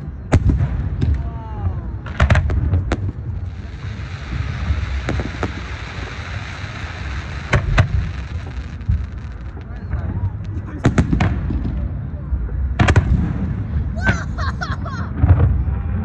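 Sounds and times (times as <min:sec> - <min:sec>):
fireworks bangs: 0:00.0 - 0:12.1, 0:12.7 - 0:16.0
low rumble: 0:00.0 - 0:16.0
steady hiss: 0:03.3 - 0:10.8.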